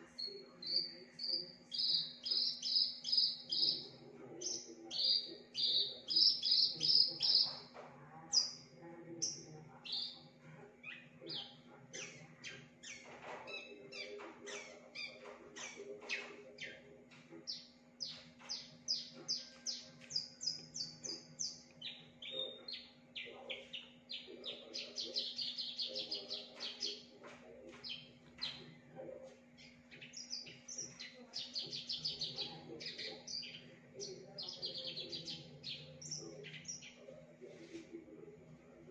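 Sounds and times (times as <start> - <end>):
bush lark singing: 0.2 - 7.6.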